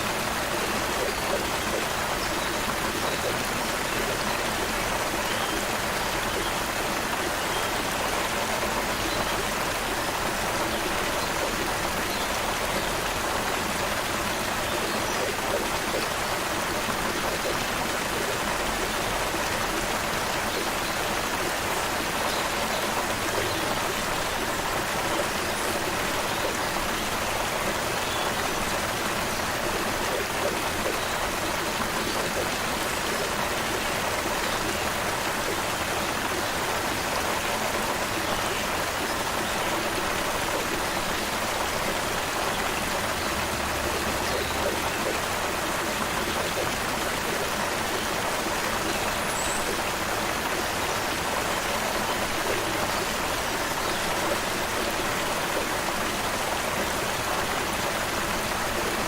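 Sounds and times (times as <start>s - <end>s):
creek water babbling: 0.0s - 59.0s.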